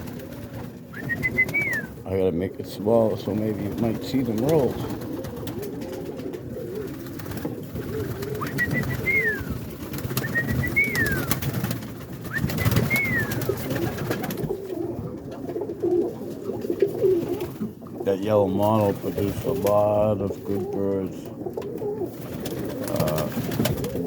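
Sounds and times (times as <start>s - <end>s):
pigeons cooing: 0.0s - 24.0s
high whistled notes: 8.4s - 9.5s, 12.3s - 13.4s.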